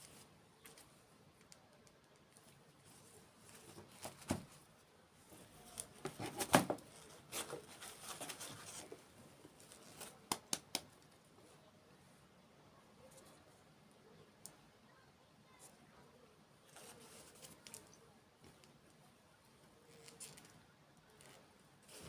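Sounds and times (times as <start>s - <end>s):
sharp clicks and taps: 10.3s - 11.0s.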